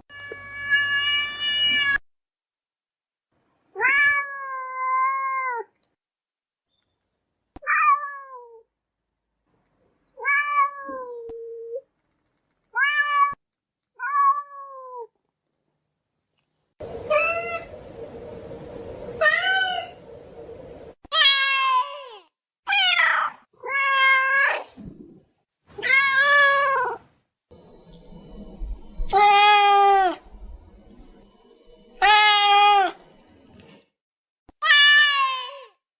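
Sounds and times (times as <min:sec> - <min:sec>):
cat meowing: 0:29.1 - 0:30.2, 0:32.0 - 0:33.0.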